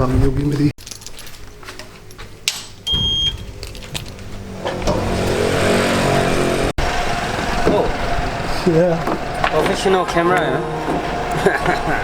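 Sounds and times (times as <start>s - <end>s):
car engine and road noise: 3.5s - 12.0s.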